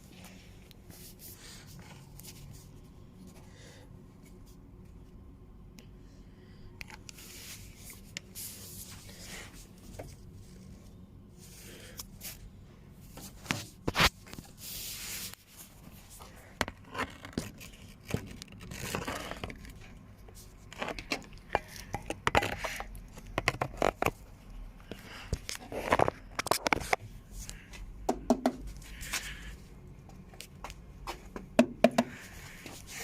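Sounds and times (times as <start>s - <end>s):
faint low hum: 0.0s - 33.0s
handling noises and rubbing: 6.9s - 27.9s.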